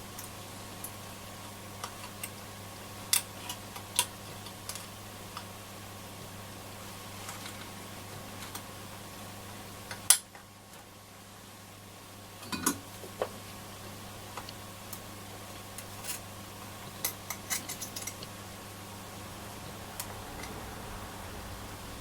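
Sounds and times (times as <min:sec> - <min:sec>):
steady low hum: 0:11.0 - 0:22.0.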